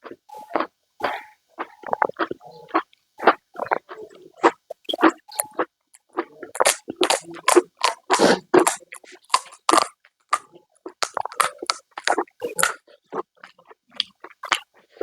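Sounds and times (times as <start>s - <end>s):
crunchy snack bites: 0.0s - 14.7s
wet chewing: 0.0s - 15.0s.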